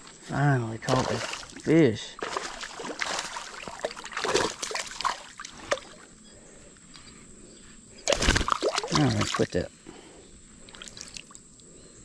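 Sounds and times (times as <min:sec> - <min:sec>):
creek trickling: 0:00.3 - 0:07.3, 0:08.0 - 0:11.8
creek water splashing: 0:00.8 - 0:06.2, 0:08.0 - 0:09.7, 0:10.6 - 0:11.5.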